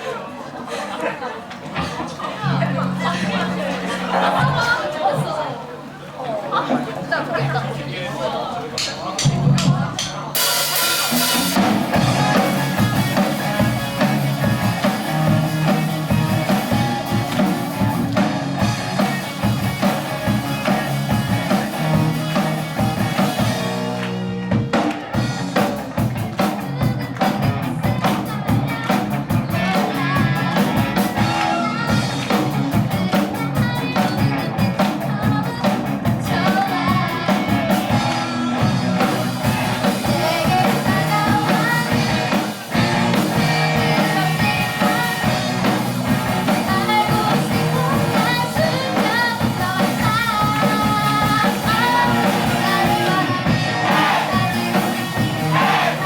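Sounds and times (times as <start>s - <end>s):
drum kit: 8.8s - 56.0s
bass guitar: 8.9s - 56.0s
electric guitar: 10.4s - 56.0s
person singing: 26.4s - 56.0s.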